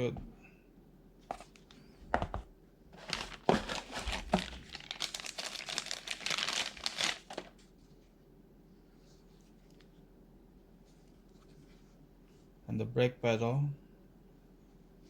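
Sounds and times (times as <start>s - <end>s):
packaging crinkling: 3.0s - 7.6s.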